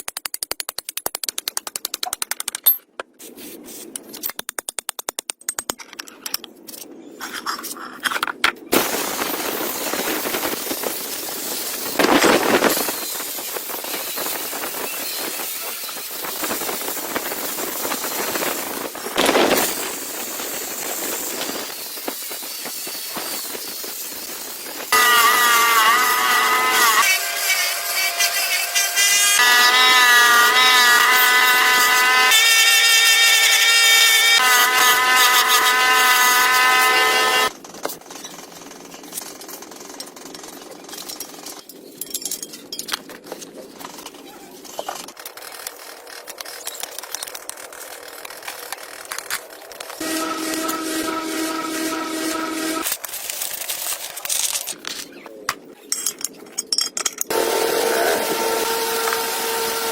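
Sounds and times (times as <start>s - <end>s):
power tool motor whine: 24.9s - 37.5s, 50.0s - 52.9s, 57.3s - 59.9s
low motor whine: 50.0s - 52.9s, 57.3s - 59.9s.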